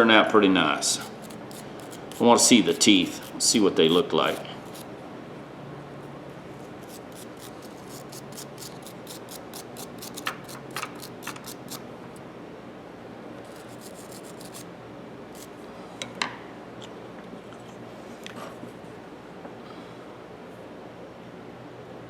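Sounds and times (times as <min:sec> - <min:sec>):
scrubbing metal parts: 0:01.0 - 0:04.9, 0:06.8 - 0:11.8.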